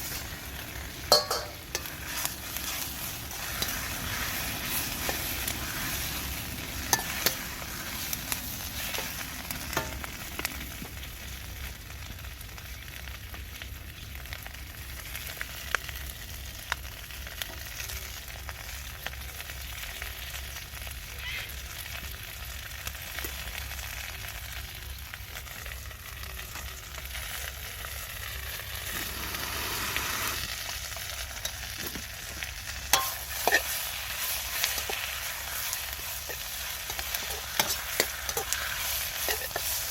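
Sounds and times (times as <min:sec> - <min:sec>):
food sizzling in a wok: 0:00.0 - 0:39.9
sharp clinks against a pan: 0:01.1 - 0:02.0, 0:32.9 - 0:33.7.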